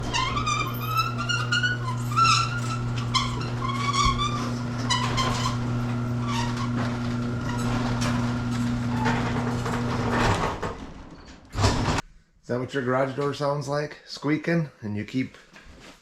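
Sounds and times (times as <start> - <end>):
garage door spring squeaking: 0.0 - 12.0.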